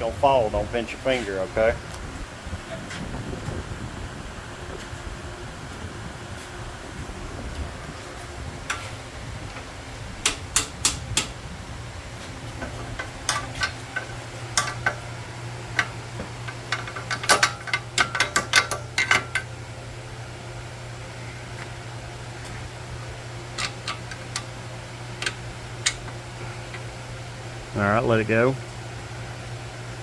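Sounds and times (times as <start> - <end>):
steady low hum: 0.0 - 30.0
wrench clinking on metal: 13.0 - 15.1, 15.8 - 19.5.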